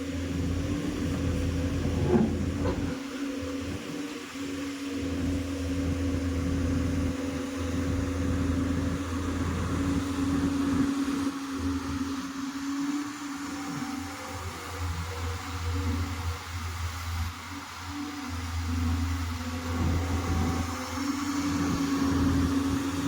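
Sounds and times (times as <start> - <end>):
diesel engine droning: 0.0 - 12.2.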